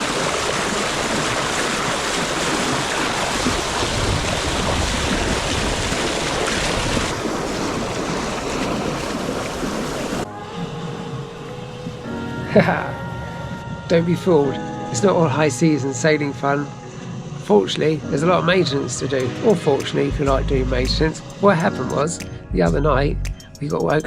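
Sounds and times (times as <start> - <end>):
wind buffeting microphone: 0.0 - 13.9
waves washing: 0.0 - 20.1.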